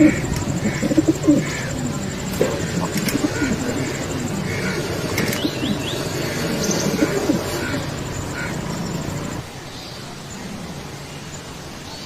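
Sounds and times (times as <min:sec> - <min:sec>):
high chirps: 0:00.0 - 0:09.4
pigeons cooing: 0:00.0 - 0:09.4.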